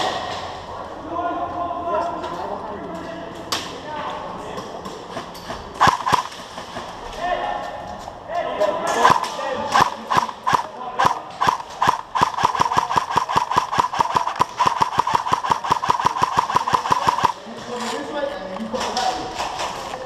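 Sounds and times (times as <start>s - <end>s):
airsoft rifle shots: 5.8s - 6.9s, 8.9s - 17.4s.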